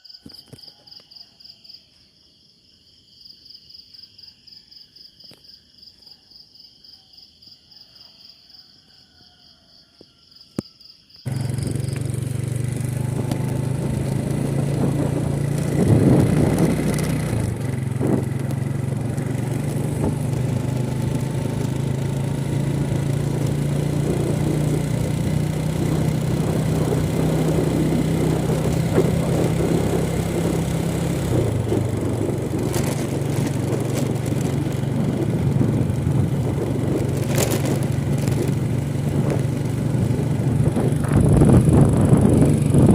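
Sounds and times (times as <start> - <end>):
crickets trilling: 0.0 - 41.0
small motorcycle engine running: 11.2 - 42.9
wind and road noise: 11.3 - 42.9.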